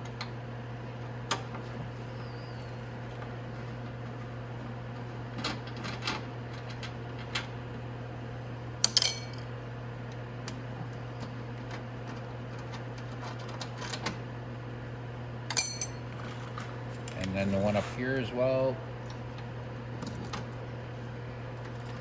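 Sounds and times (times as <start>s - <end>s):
steady low hum: 0.1s - 22.0s
sharp ringing metal clinks: 15.5s - 16.1s.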